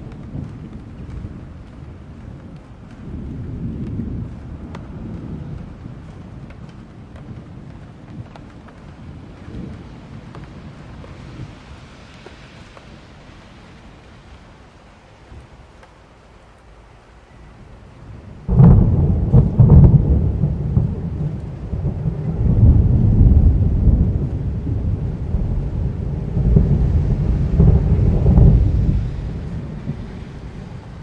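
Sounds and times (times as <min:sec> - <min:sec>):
thunder cracking and rumbling: 0:00.0 - 0:14.5, 0:18.0 - 0:31.0
light rain: 0:00.0 - 0:31.0.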